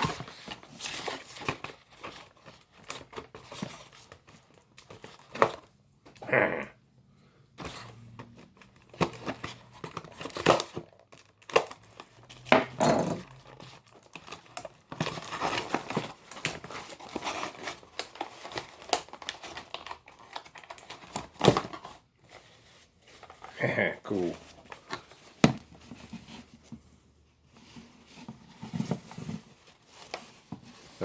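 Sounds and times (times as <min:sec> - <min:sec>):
packaging crinkling and tearing: 0:08.1 - 0:22.4.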